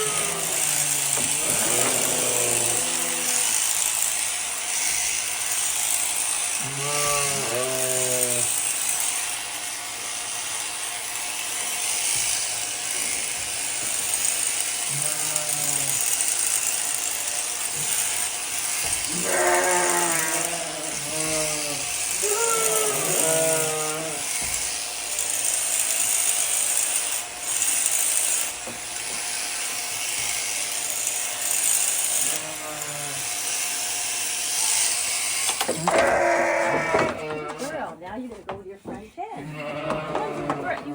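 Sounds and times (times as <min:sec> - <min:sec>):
sheep bleating: 0:00.0 - 0:03.9, 0:06.6 - 0:08.7, 0:14.8 - 0:16.2, 0:19.1 - 0:24.3, 0:32.2 - 0:33.4, 0:35.7 - 0:37.9, 0:39.4 - 0:40.9
electric shears buzzing: 0:00.0 - 0:40.9.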